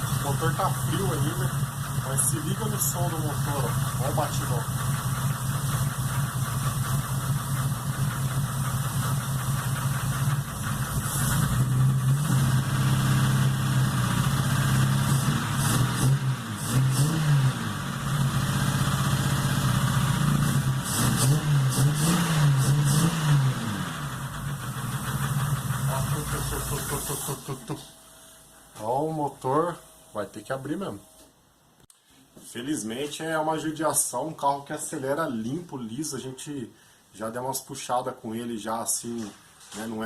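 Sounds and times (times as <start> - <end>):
engine knocking while revving: 0.0 - 27.0.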